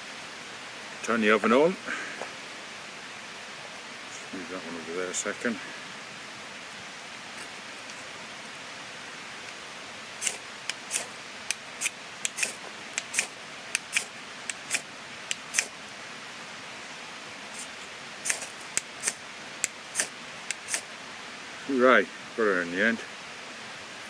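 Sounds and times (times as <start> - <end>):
stream water hissing: 0.0 - 24.0
fire starter scraping strikes: 10.2 - 15.7, 17.6 - 20.9.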